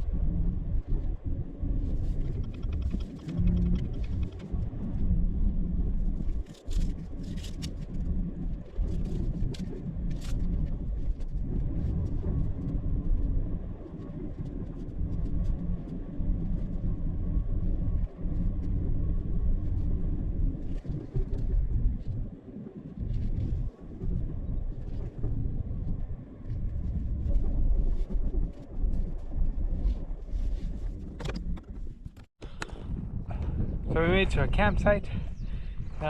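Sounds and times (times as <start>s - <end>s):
vehicle road rumble: 0.0s - 22.3s.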